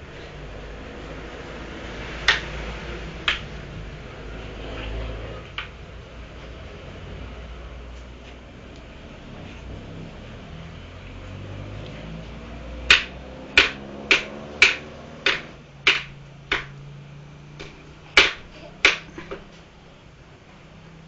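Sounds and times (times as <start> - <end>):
sharp snapping clicks: 2.3 - 2.5.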